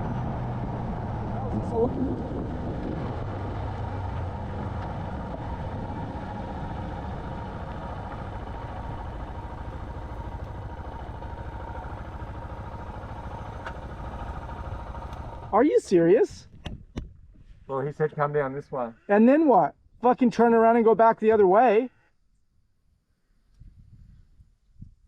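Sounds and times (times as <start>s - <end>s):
motorcycle engine running: 0.0s - 15.6s.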